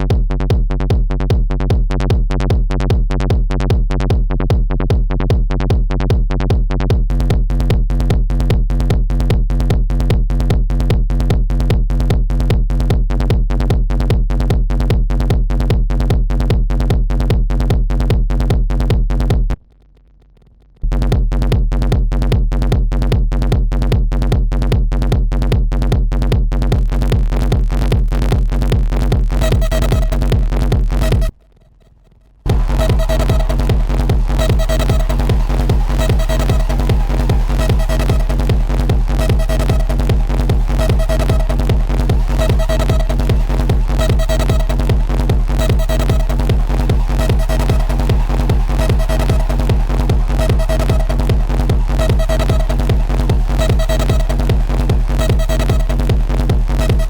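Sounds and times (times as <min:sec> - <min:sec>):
techno loop with rapid pulse: 0:26.6 - 0:31.3, 0:32.5 - 0:57.0
higher electronic tone: 0:32.5 - 0:57.0.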